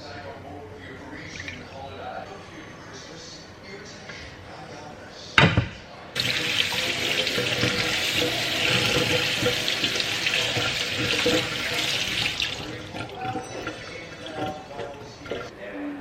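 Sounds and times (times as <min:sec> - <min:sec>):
tap running into sink: 0:06.2 - 0:15.5.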